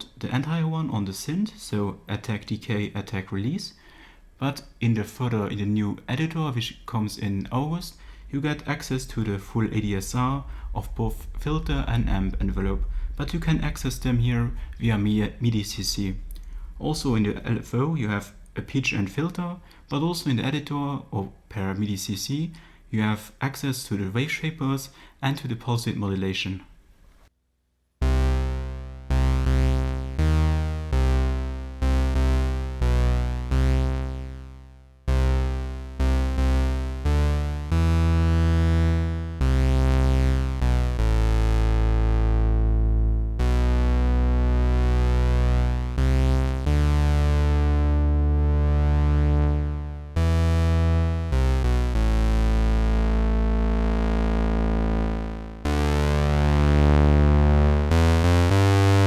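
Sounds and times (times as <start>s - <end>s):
synthesizer bass line: 8.2s - 18.9s, 28.0s - 59.0s.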